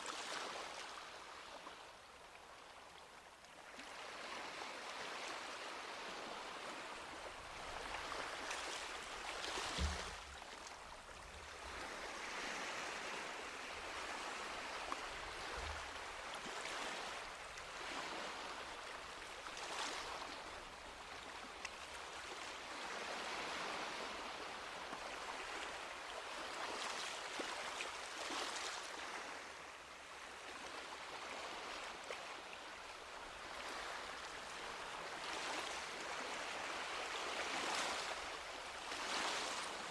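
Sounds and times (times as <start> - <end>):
small waves washing onto beach: 0.0 - 2.6, 3.5 - 39.9
low thump: 9.7 - 10.4.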